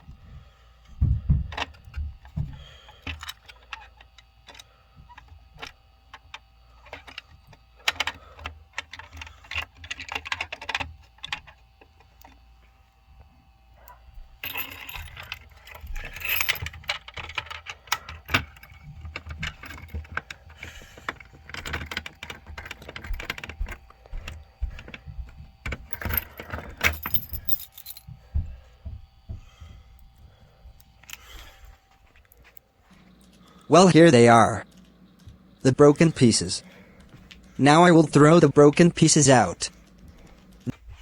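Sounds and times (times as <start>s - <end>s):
glass pieces jangling and clinking: 25.9s - 28.1s.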